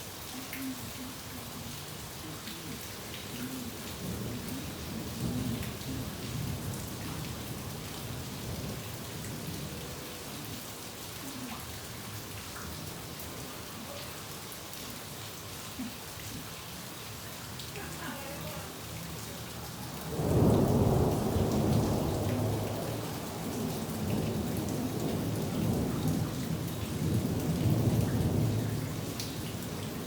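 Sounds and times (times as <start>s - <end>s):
steady rain falling: 0.0s - 30.0s
low rumble of thunder: 0.8s - 13.5s, 18.7s - 30.0s.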